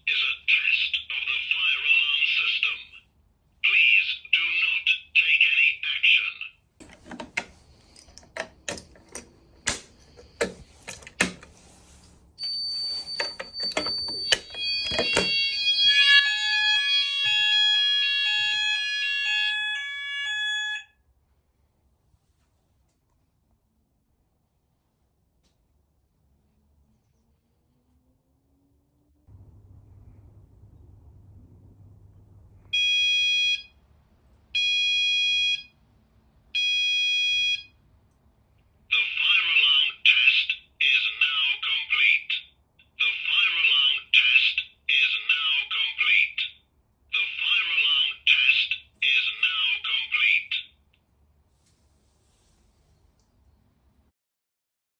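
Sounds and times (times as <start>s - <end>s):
clicks and knocks: 6.8s - 11.6s, 13.2s - 15.4s
fire alarm sounders: 12.4s - 20.9s, 32.7s - 33.8s, 34.6s - 35.8s, 36.6s - 37.8s.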